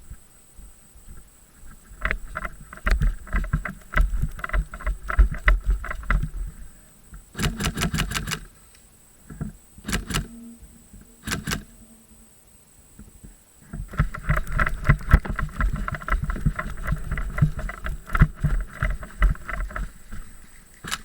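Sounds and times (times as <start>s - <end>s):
thumps and rustling on microphone: 0.0s - 7.5s, 13.0s - 21.0s
airsoft gun shots: 7.4s - 8.5s.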